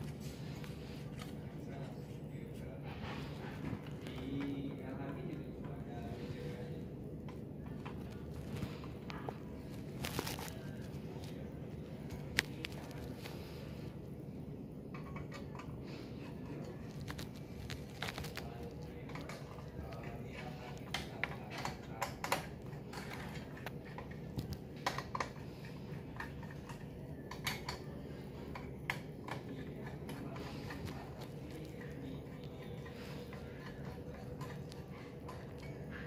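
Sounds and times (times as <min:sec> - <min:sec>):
steady low hum: 0:00.0 - 0:36.0
hands clicking computer parts: 0:19.1 - 0:36.0.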